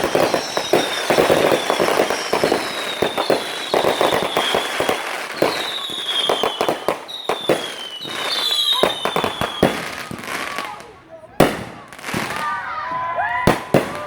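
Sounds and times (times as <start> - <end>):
high-pitched firework whistles: 0.0 - 10.8
fireworks cracking and popping: 0.0 - 14.0.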